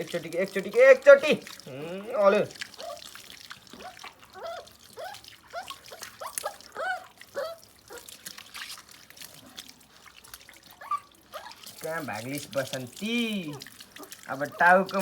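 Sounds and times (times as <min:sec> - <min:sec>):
water trickling: 0:00.0 - 0:15.0
dog whimpering: 0:01.7 - 0:03.1, 0:03.8 - 0:08.1, 0:10.8 - 0:11.6.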